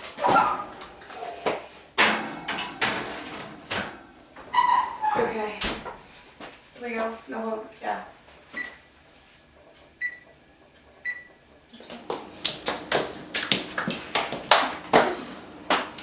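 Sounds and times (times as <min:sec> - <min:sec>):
oven control panel beeping: 0:02.0 - 0:05.4, 0:08.6 - 0:08.9, 0:10.0 - 0:10.4, 0:11.0 - 0:11.4, 0:12.1 - 0:16.0.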